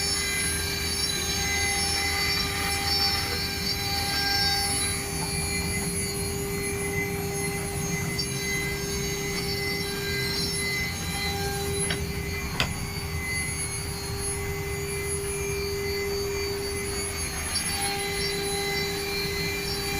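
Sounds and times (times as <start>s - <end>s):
router spindle whine: 0.0s - 19.9s.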